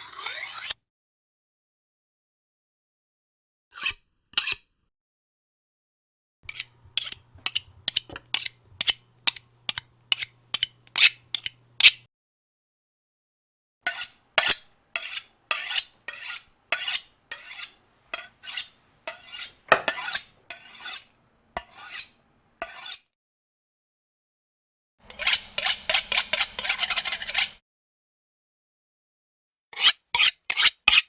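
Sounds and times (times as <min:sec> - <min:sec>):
knife scraping on sharpener: 0:00.0 - 0:00.8, 0:03.8 - 0:04.6, 0:06.5 - 0:12.0, 0:13.9 - 0:23.0, 0:25.0 - 0:27.6, 0:29.8 - 0:31.0.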